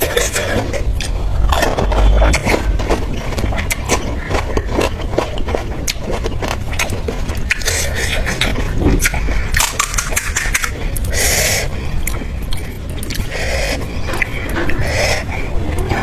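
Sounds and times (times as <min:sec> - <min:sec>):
wet chewing: 0:00.0 - 0:16.0
crunching bites: 0:00.1 - 0:11.1.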